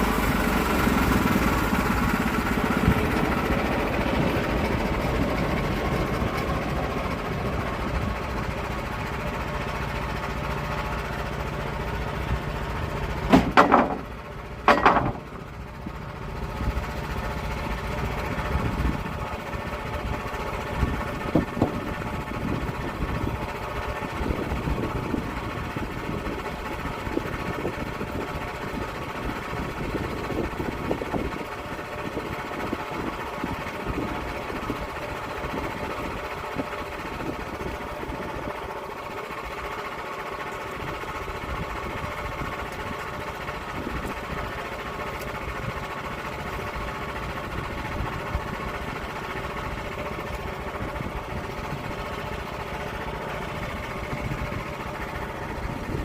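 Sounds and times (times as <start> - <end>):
gasoline saw engine under load: 0.0 - 56.0.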